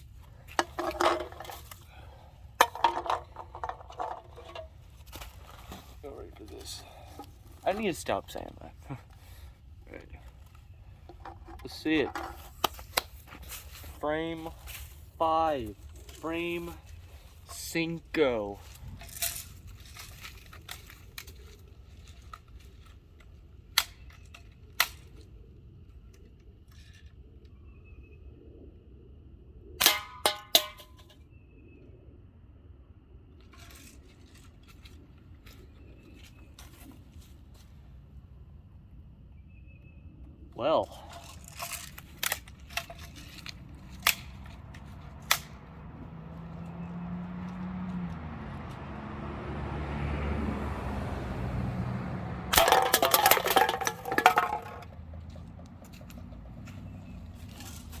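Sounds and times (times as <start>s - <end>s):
light clinking handling noises: 0.0s - 15.1s, 18.6s - 25.3s, 33.5s - 37.7s, 40.8s - 45.8s, 52.5s - 58.0s
passing vehicle engine hum: 42.9s - 58.0s.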